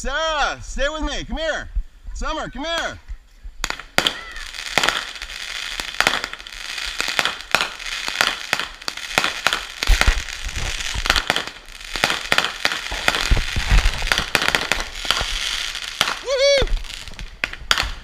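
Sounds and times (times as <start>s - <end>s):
fireworks bangs and crackles: 3.6s - 18.0s
deep firework thumps: 7.2s - 18.0s.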